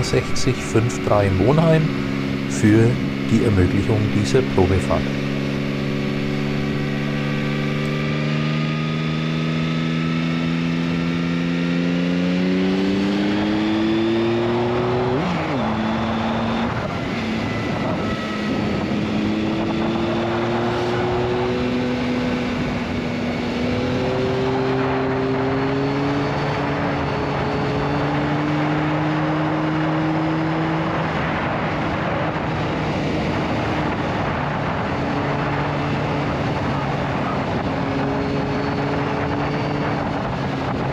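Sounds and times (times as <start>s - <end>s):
motorcycle engine: 0.0s - 40.9s
wind rush: 30.8s - 40.9s.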